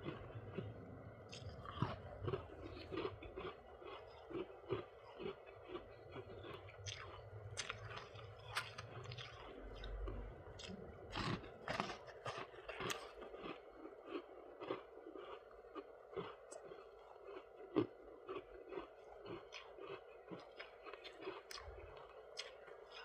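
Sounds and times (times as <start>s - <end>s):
person chewing crunchy ice: 0.0s - 23.0s.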